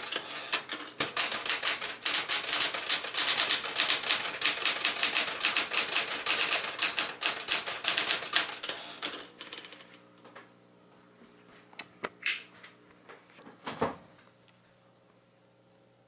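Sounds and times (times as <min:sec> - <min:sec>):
manual typewriter typing: 0:00.0 - 0:09.8.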